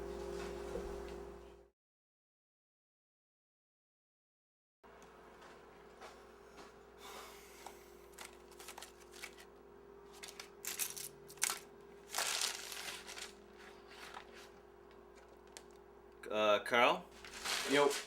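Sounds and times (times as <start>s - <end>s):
faint room hum: 4.9s - 18.0s
rustling of handled things: 7.6s - 9.5s, 10.1s - 15.8s, 17.1s - 18.0s.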